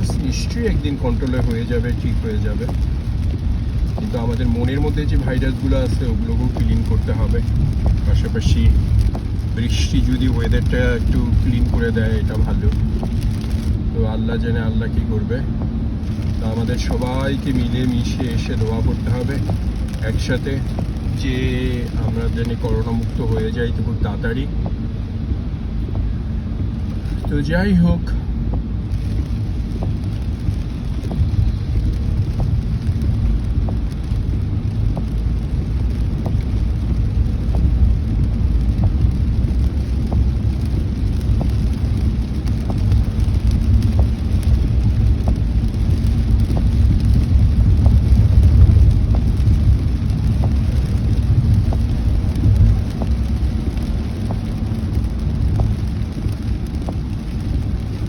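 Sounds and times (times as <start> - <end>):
faint light ticks: 0.0 - 13.8, 28.5 - 58.0
rain: 0.0 - 58.0
tyre and road noise: 0.0 - 58.0.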